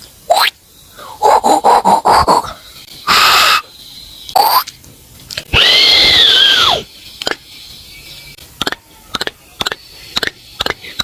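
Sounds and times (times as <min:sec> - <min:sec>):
mouth-made whirring whine: 0:00.0 - 0:08.6.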